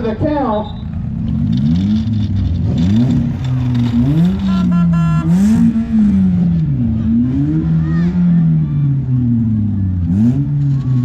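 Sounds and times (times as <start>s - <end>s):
car engines revving: 0.0s - 11.0s
short beeps: 0.6s - 1.0s.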